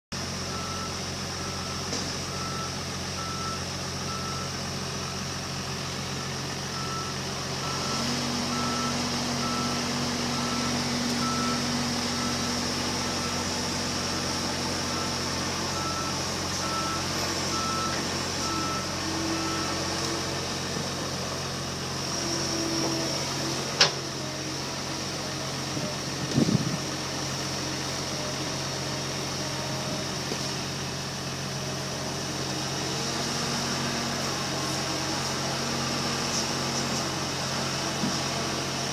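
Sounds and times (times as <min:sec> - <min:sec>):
heavy diesel engines running: 0:00.2 - 0:38.9
back-up alarm beeping: 0:06.7 - 0:20.0.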